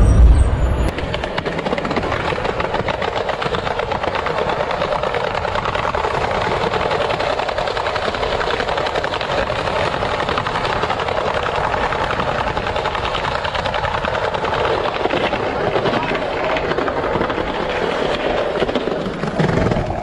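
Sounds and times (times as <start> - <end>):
skateboard wheels rolling on pavement: 0.7 - 20.0.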